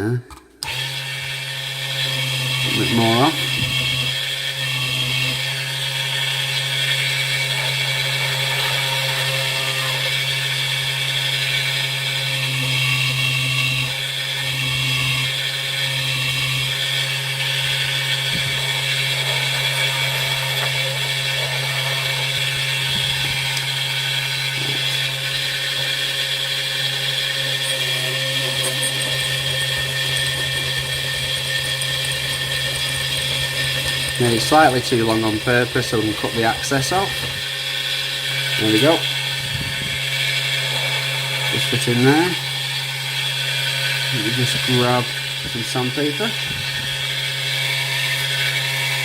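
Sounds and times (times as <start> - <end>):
rotary power tool grinding brass: 0.6 - 49.0.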